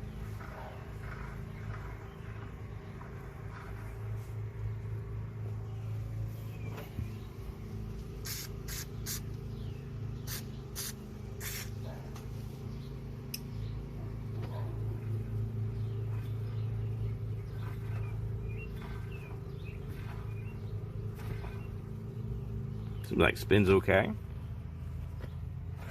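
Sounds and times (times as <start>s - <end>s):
low hum: 0.0s - 25.9s
short hissing sprays: 8.2s - 9.3s, 10.2s - 11.8s.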